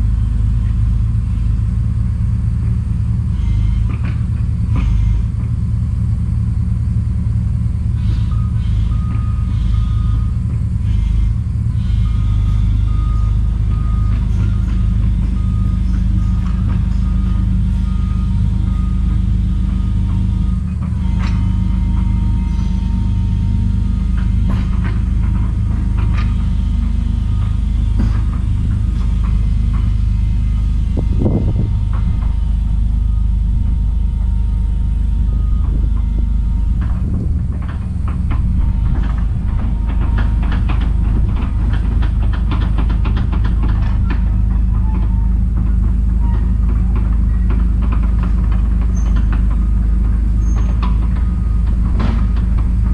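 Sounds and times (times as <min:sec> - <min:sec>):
diesel engine running: 0:00.0 - 0:52.9
rapid clanking and rattling: 0:19.0 - 0:52.9.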